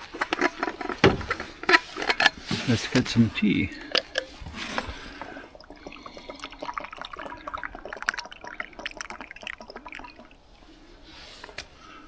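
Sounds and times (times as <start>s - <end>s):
small clicks and splashes: 0.0s - 10.7s
tea pouring: 0.2s - 11.6s.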